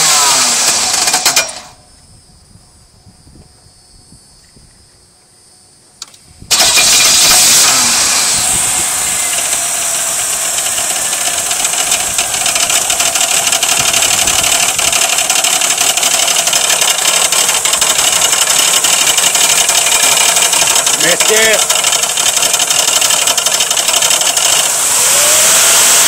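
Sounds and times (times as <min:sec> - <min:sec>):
engine idling with even knock: 0:06.0 - 0:24.9
car engine starting: 0:06.5 - 0:26.0.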